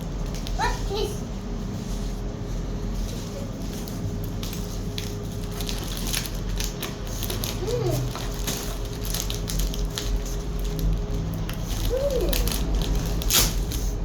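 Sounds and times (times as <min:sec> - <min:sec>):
low steady hum: 0:00.0 - 0:14.0
packaging crinkling: 0:03.1 - 0:14.0.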